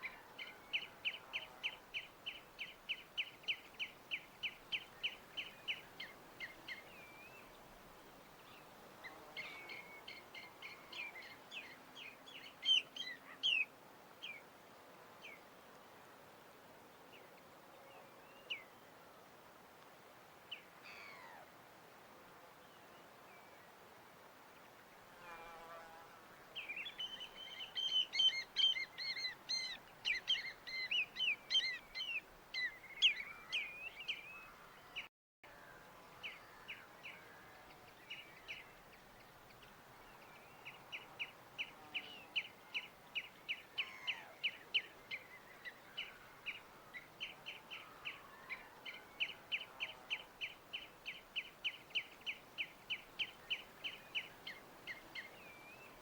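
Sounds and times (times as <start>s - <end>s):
songbirds singing: 26.6s - 56.0s.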